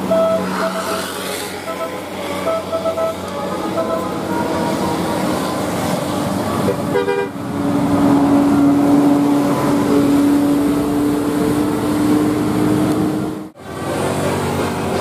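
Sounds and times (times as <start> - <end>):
bus musical air horn: 0.0 - 7.4.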